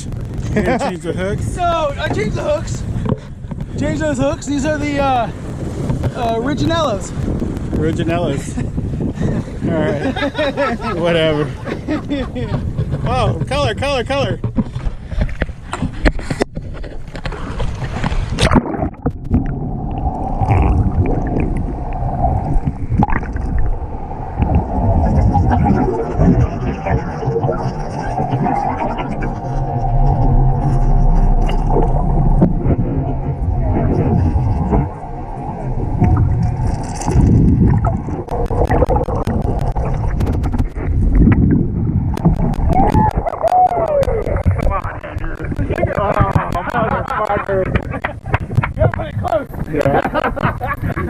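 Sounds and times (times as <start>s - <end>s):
boat engine rumble: 0.0s - 51.0s
wind: 0.0s - 51.0s
sharp clicks: 18.4s - 19.5s, 38.3s - 40.8s, 42.2s - 51.0s.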